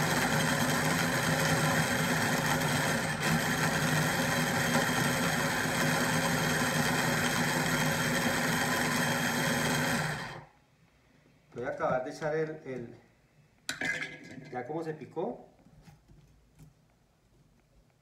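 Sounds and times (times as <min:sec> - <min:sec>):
electric food processor chopping: 0:00.0 - 0:10.5.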